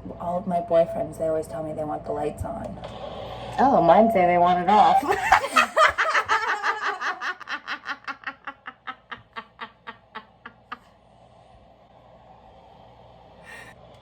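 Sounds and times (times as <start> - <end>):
woman laughing: 4.9 - 11.0.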